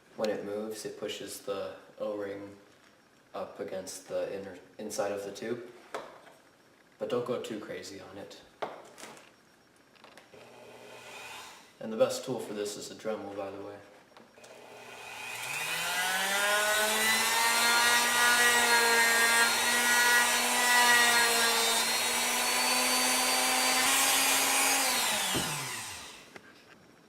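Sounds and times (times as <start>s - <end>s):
rotary tool grinding plastic pipe: 14.5s - 26.4s.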